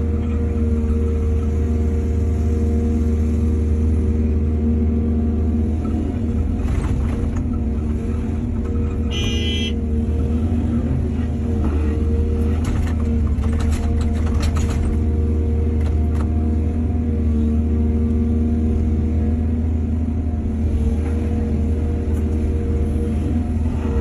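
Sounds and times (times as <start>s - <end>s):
excavator diesel engine running: 0.0s - 24.0s.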